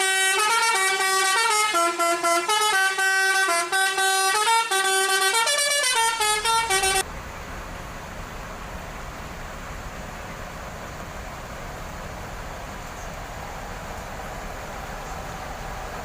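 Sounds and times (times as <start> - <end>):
musical bus horn melody: 0.0 - 7.1.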